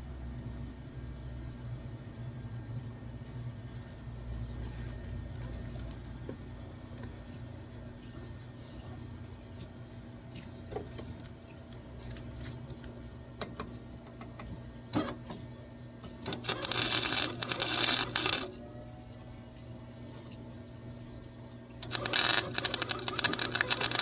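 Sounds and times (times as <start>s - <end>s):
steady low hum: 0.0s - 24.0s
welding crackle: 16.3s - 18.5s, 21.8s - 24.0s.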